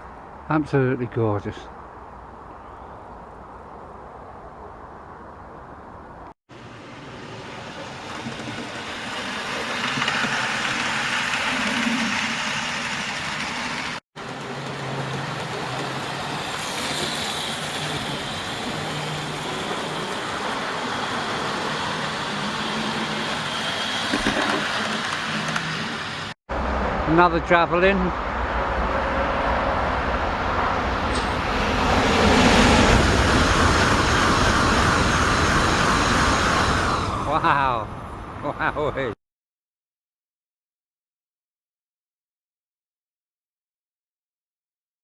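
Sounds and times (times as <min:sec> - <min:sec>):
steady traffic rush: 0:00.0 - 0:39.2
vehicle passing: 0:28.1 - 0:35.7.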